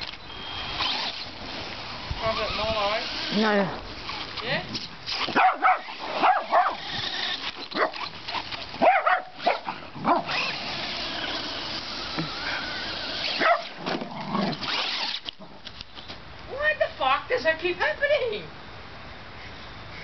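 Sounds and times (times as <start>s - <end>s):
dog barking and yipping: 5.2s - 6.8s, 7.7s - 8.1s, 8.8s - 10.6s, 13.3s - 13.8s.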